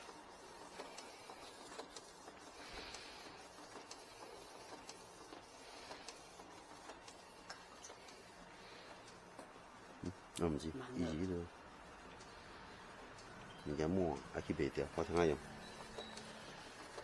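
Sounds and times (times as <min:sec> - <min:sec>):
inkjet printer printing: 0:00.0 - 0:17.0.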